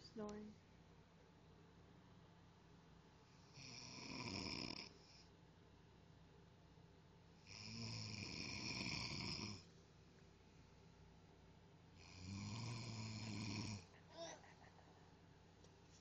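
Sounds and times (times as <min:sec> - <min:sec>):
person snoring: 0:03.5 - 0:05.2, 0:07.5 - 0:09.6, 0:12.0 - 0:14.3.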